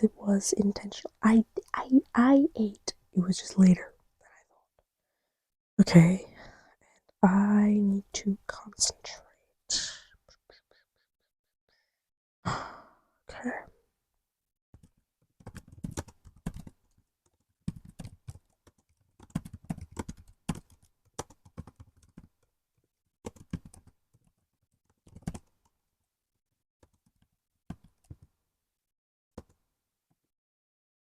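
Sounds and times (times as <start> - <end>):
typing on laptop keyboard: 14.8 - 22.5, 23.2 - 25.8, 26.8 - 28.3.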